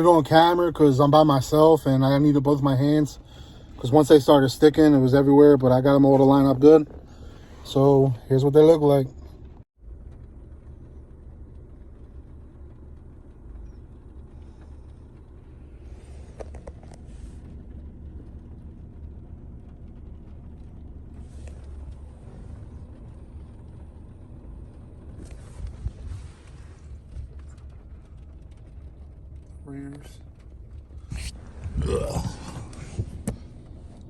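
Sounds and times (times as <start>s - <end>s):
car idling: 0.0s - 34.0s
light rustles: 24.8s - 29.4s.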